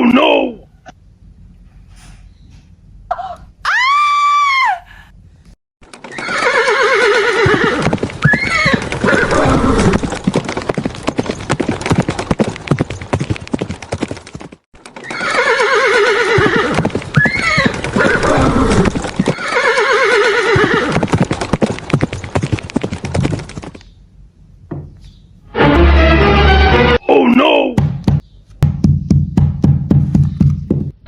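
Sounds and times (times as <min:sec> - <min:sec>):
fast clip-clopping hooves: 0:05.8 - 0:24.0, 0:28.0 - 0:31.0
horse neighing: 0:06.1 - 0:10.0, 0:15.0 - 0:21.2.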